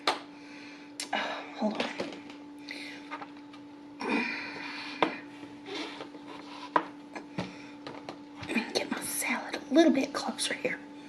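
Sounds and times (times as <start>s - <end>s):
low hum: 0.0s - 11.0s.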